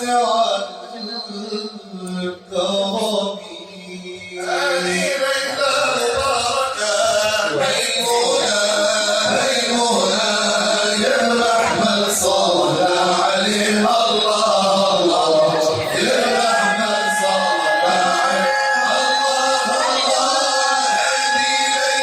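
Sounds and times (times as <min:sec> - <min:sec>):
men chanting praise songs: 0:00.0 - 0:22.0.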